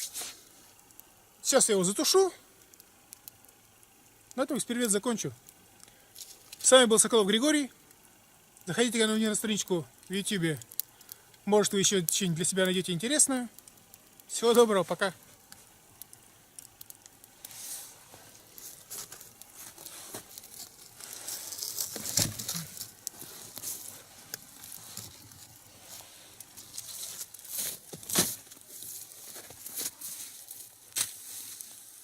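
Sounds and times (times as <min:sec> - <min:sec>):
campfire crackling and hissing: 0:00.0 - 0:32.0
sharp pops of fire: 0:09.9 - 0:25.7, 0:26.3 - 0:31.9.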